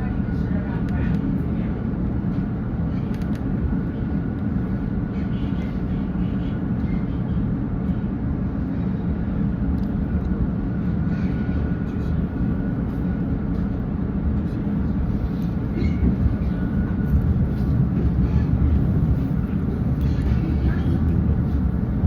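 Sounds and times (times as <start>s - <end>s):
train rumbling: 0.0s - 22.0s.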